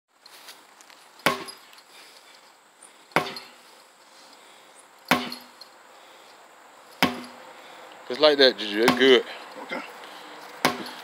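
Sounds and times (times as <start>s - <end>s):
sledgehammer blows ringing: 1.2s - 1.6s, 3.2s - 3.6s, 5.1s - 5.6s, 7.0s - 7.4s, 8.8s - 9.2s, 10.6s - 11.0s.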